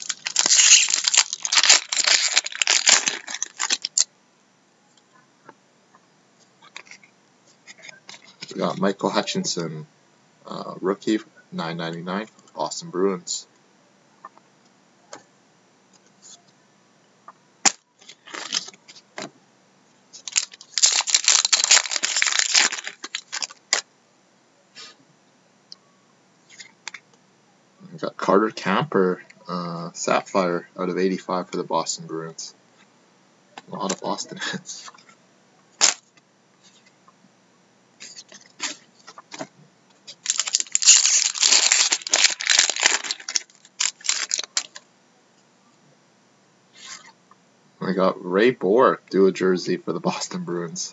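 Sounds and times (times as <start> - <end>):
card pack wrapper tearing: 0.0 - 4.1, 17.6 - 18.8, 20.2 - 23.8, 35.8 - 36.1, 40.1 - 44.8.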